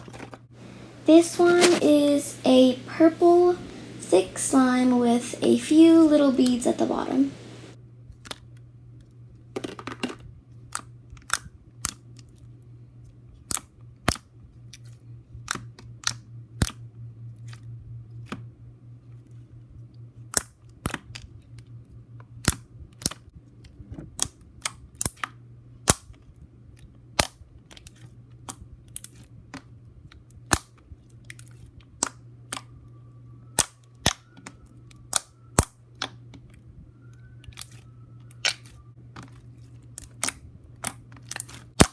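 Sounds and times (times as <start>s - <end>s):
low steady hum: 0.6s - 7.8s.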